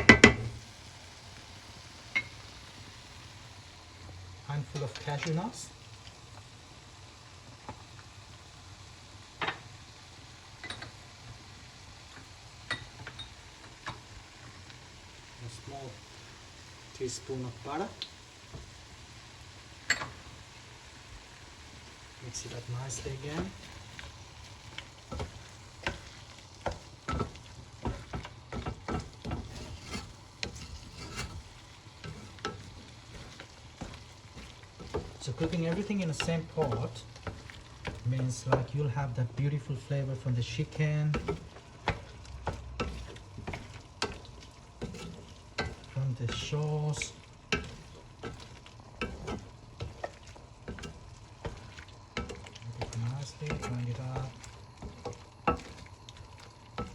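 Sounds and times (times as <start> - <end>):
spoon knocking against pot: 0.0 - 0.5
utensil clinking on a pot: 0.0 - 0.5, 2.1 - 2.4, 10.6 - 11.0, 12.2 - 14.0, 19.8 - 20.3, 32.0 - 38.8, 40.4 - 56.2
sauce sizzling: 0.0 - 56.9.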